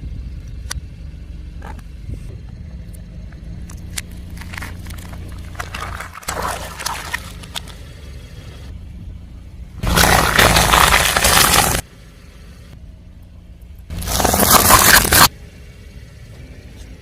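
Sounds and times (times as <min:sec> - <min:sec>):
car engine running: 0:00.0 - 0:17.0
tyre crushing objects: 0:04.4 - 0:07.7, 0:09.8 - 0:11.9, 0:13.9 - 0:15.3.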